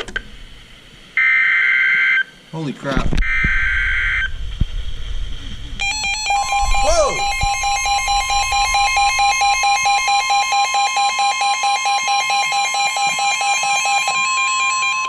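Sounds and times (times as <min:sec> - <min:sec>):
rapid electronic beeping: 0:05.8 - 0:12.7
steady high warning tone: 0:05.8 - 0:15.0.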